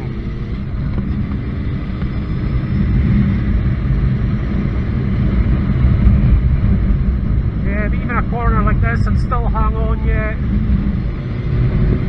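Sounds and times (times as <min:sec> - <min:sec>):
motorcycle engine running: 0:00.0 - 0:12.0
wind rushing over microphone: 0:00.0 - 0:12.0.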